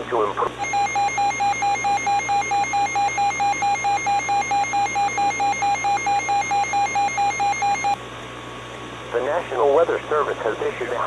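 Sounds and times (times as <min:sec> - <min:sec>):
rapid electronic alert beeps: 0:00.6 - 0:08.0.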